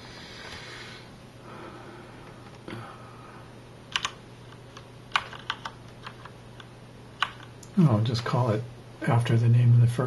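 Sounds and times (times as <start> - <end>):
keyboard key clicks: 3.9 - 4.2, 5.1 - 6.3, 7.2 - 7.5.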